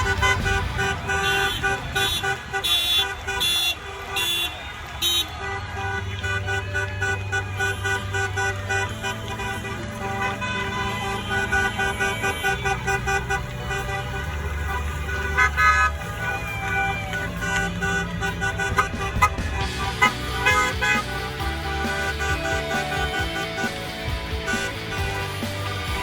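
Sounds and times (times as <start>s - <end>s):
car horns honking: 0.0s - 26.0s
music with a steady beat: 16.0s - 26.0s.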